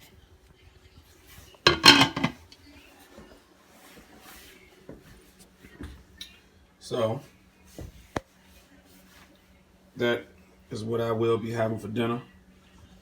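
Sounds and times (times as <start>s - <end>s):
faint handling noise: 1.2s - 6.2s
cookware clattering: 1.7s - 2.4s.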